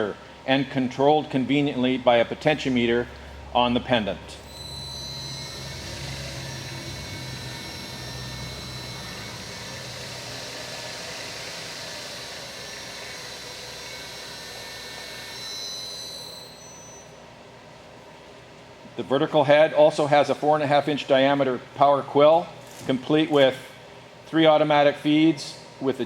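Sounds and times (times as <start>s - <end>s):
high electrical whine: 0.0s - 17.3s
milling machine hum: 3.1s - 18.2s.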